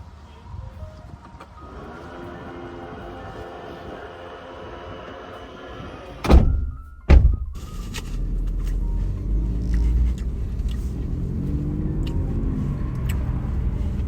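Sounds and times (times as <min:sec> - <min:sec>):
background music: 0:00.0 - 0:14.0
steady low rumble: 0:00.0 - 0:14.0
heavy thunks: 0:06.0 - 0:08.0.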